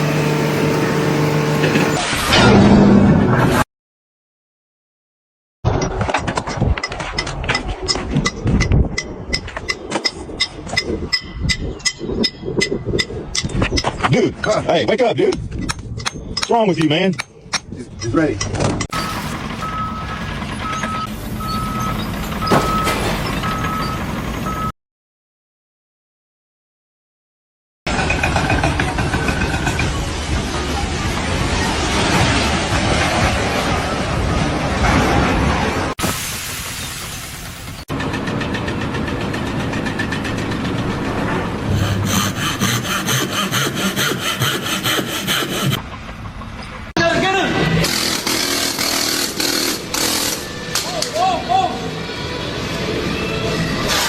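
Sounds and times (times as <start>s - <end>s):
engine running: 0.0s - 3.3s, 18.9s - 24.7s, 36.6s - 46.9s
reversing alarm beeping: 18.9s - 24.7s
saw rasping strokes: 41.7s - 45.8s, 47.8s - 50.5s.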